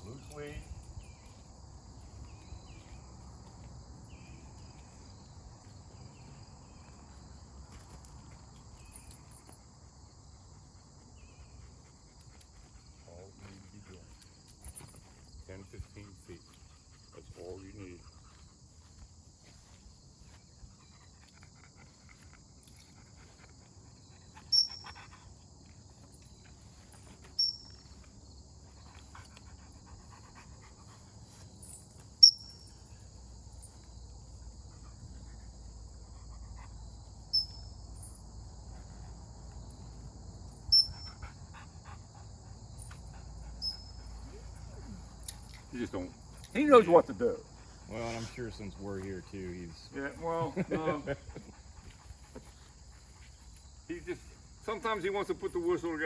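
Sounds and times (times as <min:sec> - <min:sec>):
insects chirring: 0:00.0 - 0:56.0
sharp high chirps: 0:31.7 - 0:32.8.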